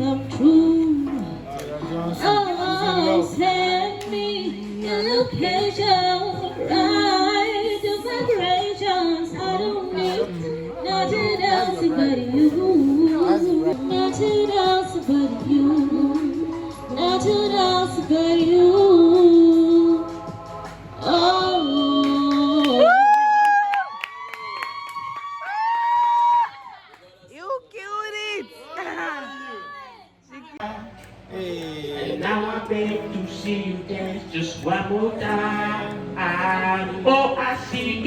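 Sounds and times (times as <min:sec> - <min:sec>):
woman singing: 0:00.0 - 0:01.4, 0:02.1 - 0:23.4
instrumental backing: 0:00.0 - 0:22.8.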